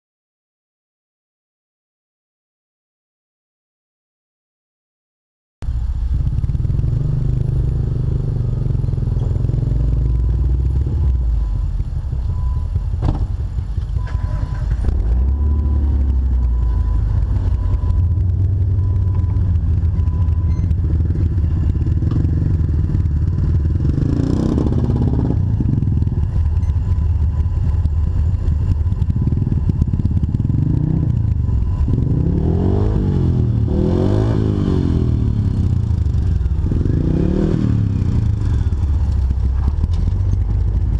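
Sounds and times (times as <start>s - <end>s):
engine running at low speed: 5.6s - 40.9s
engine revving: 5.8s - 40.9s
sharp knock: 13.0s - 13.4s.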